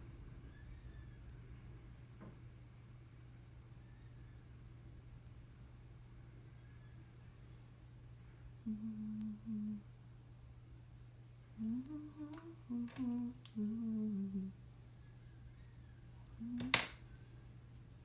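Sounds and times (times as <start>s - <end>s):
woman humming softly: 8.6s - 10.0s, 11.5s - 14.7s, 16.2s - 17.1s.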